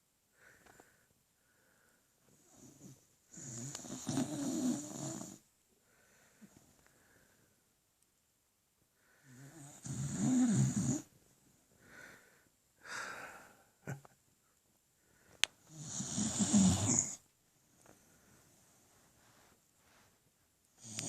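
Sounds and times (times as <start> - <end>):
dog snoring: 2.4 - 5.4, 9.3 - 11.1, 15.7 - 17.2, 20.8 - 21.0.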